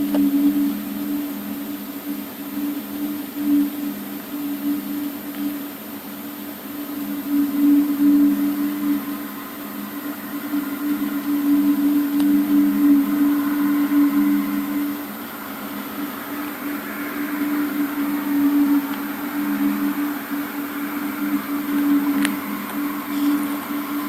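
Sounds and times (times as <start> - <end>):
low droning hum: 0.0 - 24.0.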